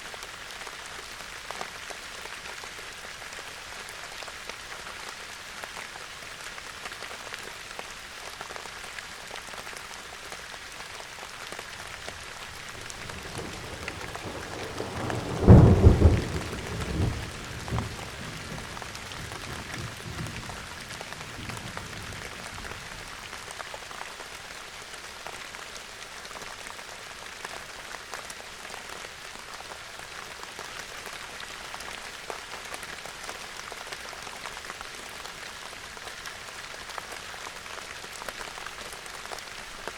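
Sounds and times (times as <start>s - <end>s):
steady rain falling: 0.0s - 39.9s
thunder rumbling: 12.7s - 20.8s.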